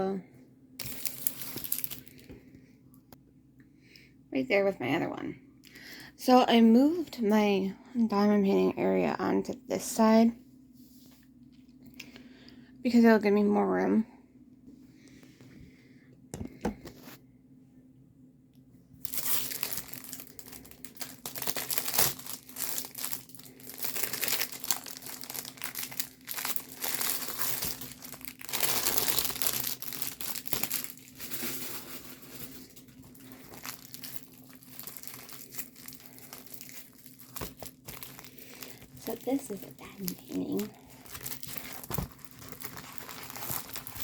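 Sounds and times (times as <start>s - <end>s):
plastic packaging crinkling and tearing: 0.8s - 2.3s, 19.0s - 44.0s.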